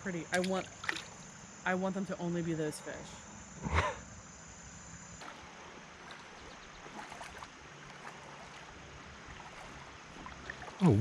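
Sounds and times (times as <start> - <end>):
creek water running: 0.0 - 1.4, 5.2 - 11.0.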